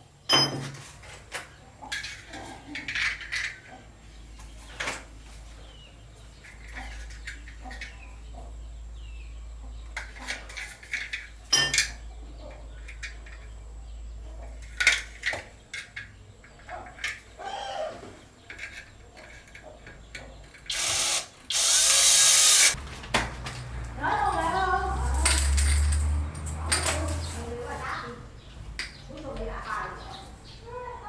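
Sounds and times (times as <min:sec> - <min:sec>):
power drill running: 0:20.7 - 0:22.8.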